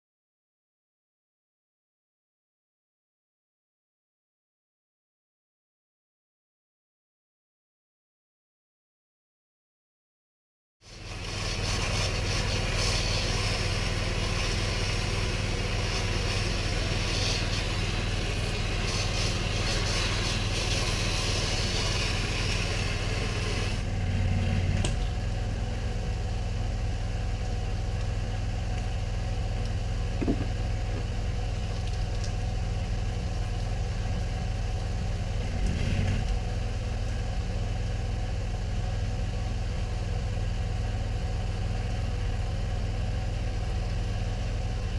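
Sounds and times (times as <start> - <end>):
pressure washer engine running: 10.8 - 44.9
high hiss: 10.9 - 23.8.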